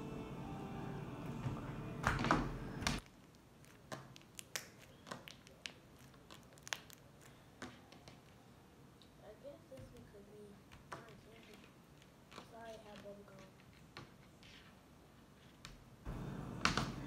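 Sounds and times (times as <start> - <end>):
steady background sound: 0.0 - 3.7
slime clicking and popping: 3.0 - 7.3.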